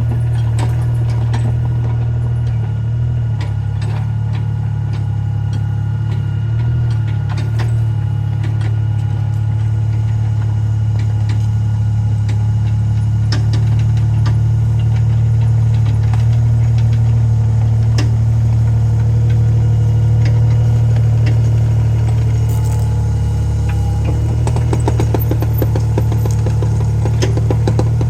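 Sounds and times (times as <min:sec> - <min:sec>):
diesel engine humming: 0:00.0 - 0:28.0
clicks and clanks: 0:23.6 - 0:28.0.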